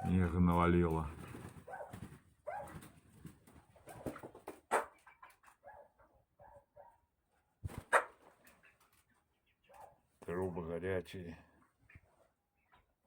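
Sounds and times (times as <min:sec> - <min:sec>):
chickens making soft calls: 0:01.1 - 0:06.3, 0:07.6 - 0:10.5.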